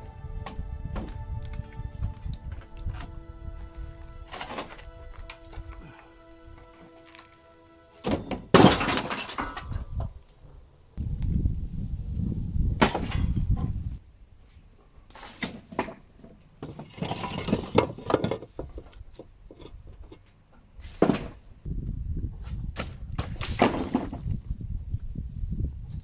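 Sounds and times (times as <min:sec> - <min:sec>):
low rumble: 0:00.0 - 0:06.8, 0:09.6 - 0:14.1.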